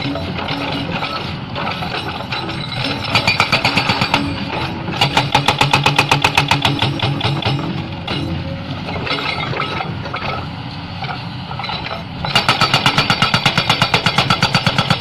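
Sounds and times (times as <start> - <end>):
hydraulic rock breaker hammering: 0.0 - 10.5, 11.6 - 15.0.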